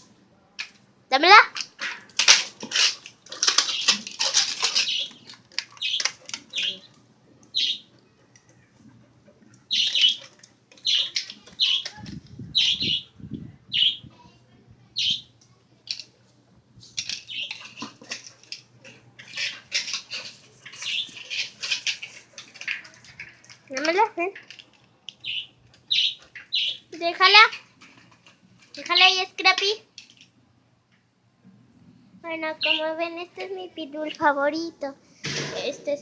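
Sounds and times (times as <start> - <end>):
puppy scuffling with a toy: 16.8 - 24.6.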